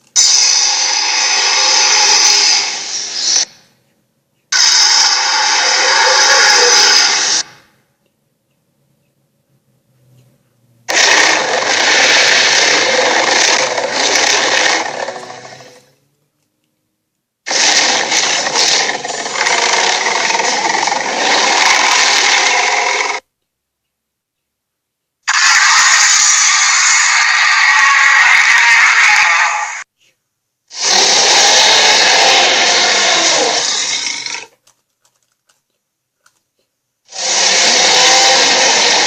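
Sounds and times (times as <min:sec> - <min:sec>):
harsh noisy sound effects: 0:00.2 - 0:03.5, 0:04.5 - 0:07.6, 0:10.9 - 0:15.9, 0:17.5 - 0:23.2, 0:25.3 - 0:29.8.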